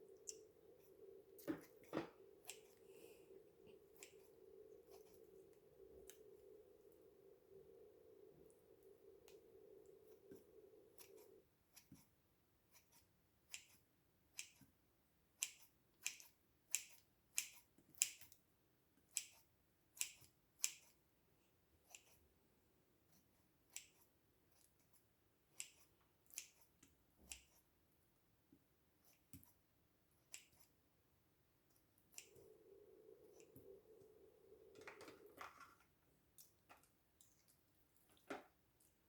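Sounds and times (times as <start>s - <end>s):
low steady hum: 0.0s - 14.1s, 29.6s - 39.0s.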